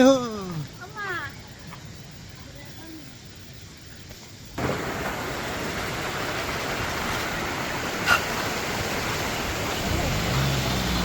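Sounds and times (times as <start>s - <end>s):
waterfall rushing water: 4.6s - 11.0s.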